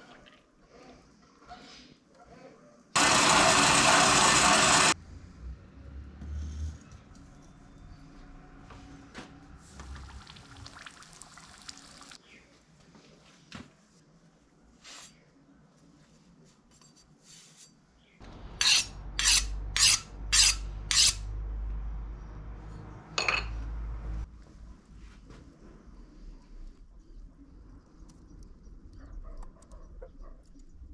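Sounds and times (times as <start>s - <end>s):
metal scraping rub: 18.6s - 21.3s.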